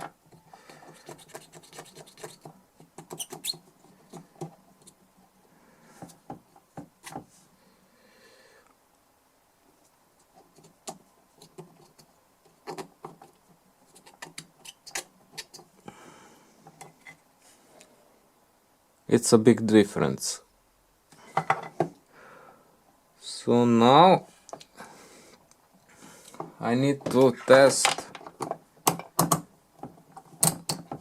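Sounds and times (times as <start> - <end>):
light clicks and scratches: 0.4 - 5.0.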